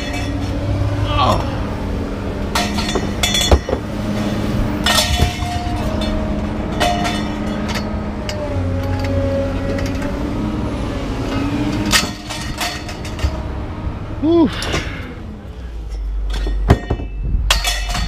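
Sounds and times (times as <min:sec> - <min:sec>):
scrap metal clanking: 0:00.0 - 0:00.8, 0:02.4 - 0:10.2, 0:11.3 - 0:13.6, 0:15.8 - 0:18.0
sharp metallic impacts: 0:00.0 - 0:10.3, 0:11.1 - 0:13.8, 0:15.8 - 0:18.0
engine running: 0:00.0 - 0:18.0.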